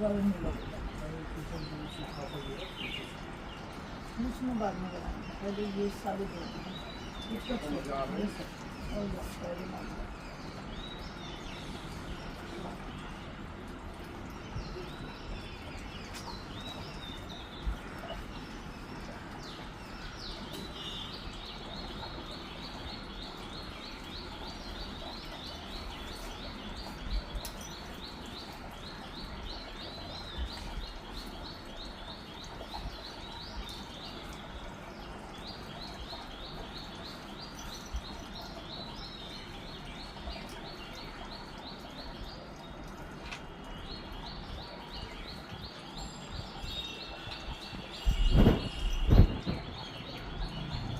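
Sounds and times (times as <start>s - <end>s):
bird chirping: 14.2s - 50.9s.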